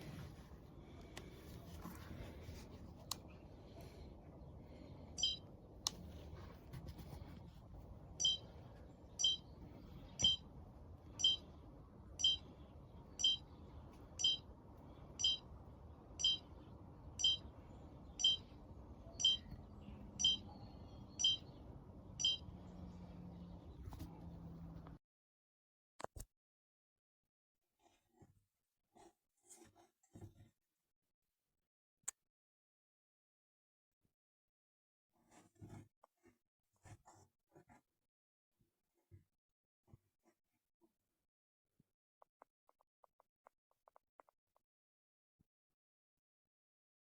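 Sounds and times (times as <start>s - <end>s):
short high-pitched chirp: 5.2s - 5.4s, 19.2s - 19.6s, 20.2s - 20.6s, 21.2s - 21.4s, 22.2s - 22.4s.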